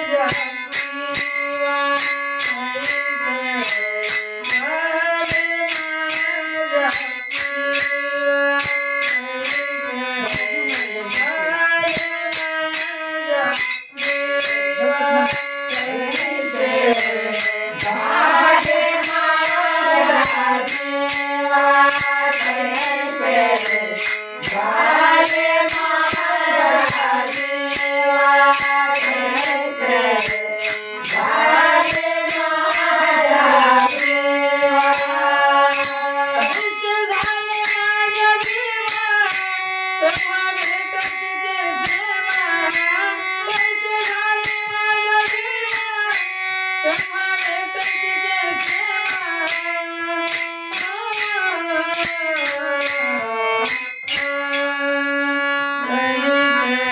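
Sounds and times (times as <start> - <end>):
small jingling cymbal strikes: 0.0 - 56.9
sliding melodic line: 15.9 - 36.5.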